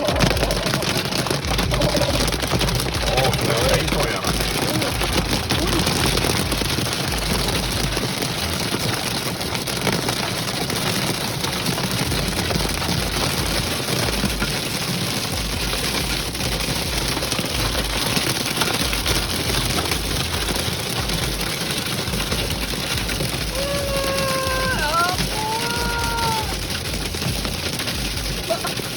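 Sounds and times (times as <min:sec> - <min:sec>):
low rumble: 0:00.0 - 0:08.9
rain and hail on a vehicle: 0:00.0 - 0:28.9.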